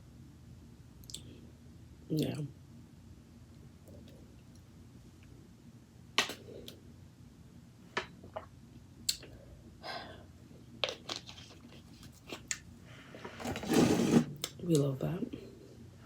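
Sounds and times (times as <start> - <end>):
sharp mouth clicks: 1.0 - 1.3.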